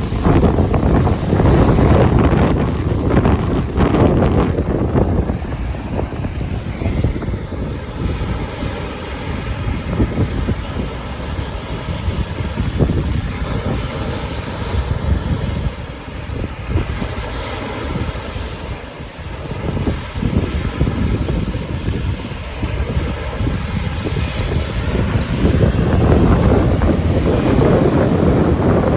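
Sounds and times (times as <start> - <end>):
lake waves washing in: 0.0 - 28.9
wind gusting on microphone: 0.0 - 28.9.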